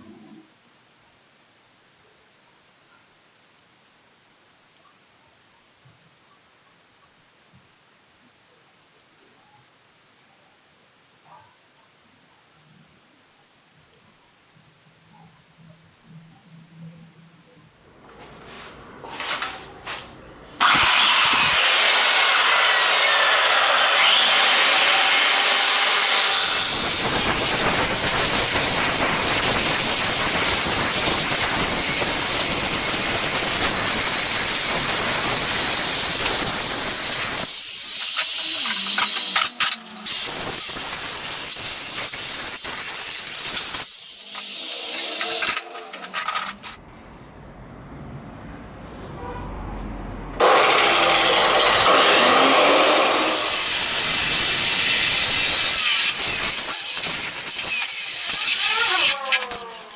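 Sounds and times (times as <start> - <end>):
power tool grinding: 20.6 - 46.7, 50.4 - 59.9.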